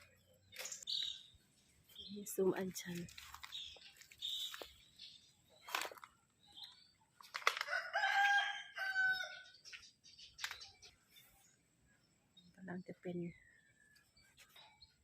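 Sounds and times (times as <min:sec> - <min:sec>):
small birds chirping: 0:00.0 - 0:15.0
rooster crowing: 0:07.7 - 0:09.5.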